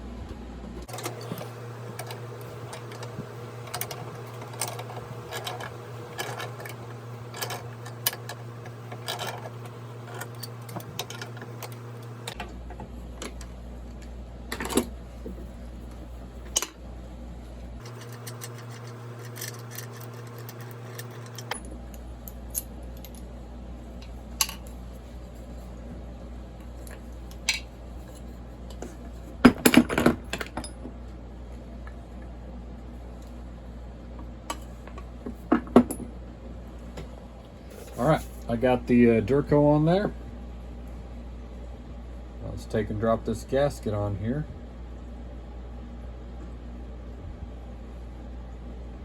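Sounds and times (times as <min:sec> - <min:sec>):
steady low hum: 0:00.0 - 0:49.0
metal parts clinking: 0:00.9 - 0:12.4, 0:17.8 - 0:23.3.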